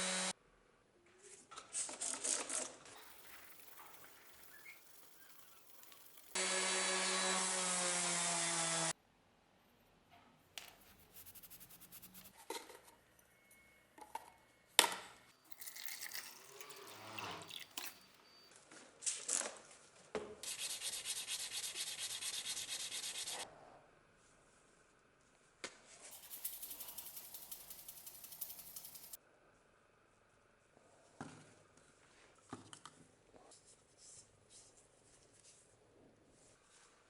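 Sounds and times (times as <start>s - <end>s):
hand sanding a knife: 3.0s - 6.4s, 10.8s - 12.4s, 20.4s - 23.4s, 26.1s - 29.2s.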